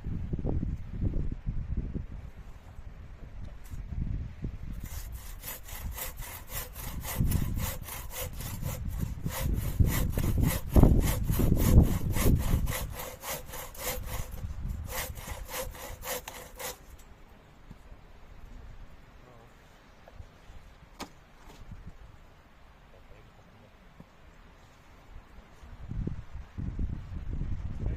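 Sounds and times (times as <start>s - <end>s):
wind rumbling on microphone: 0.0s - 16.9s, 21.5s - 22.3s, 25.0s - 27.9s
hand saw cutting wood: 4.8s - 17.0s.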